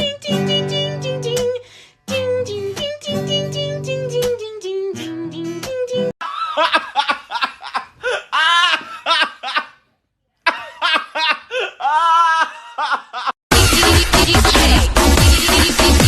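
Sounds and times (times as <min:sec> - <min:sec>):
song with guitar and singing: 0:00.0 - 0:06.1
person laughing hard: 0:06.2 - 0:09.8, 0:10.4 - 0:13.4.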